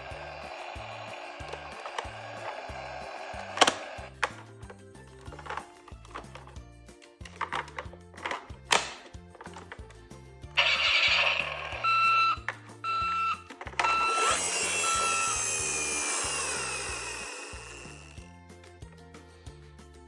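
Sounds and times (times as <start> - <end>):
background music: 0.1 - 10.6
electronic beeps: 10.6 - 15.5.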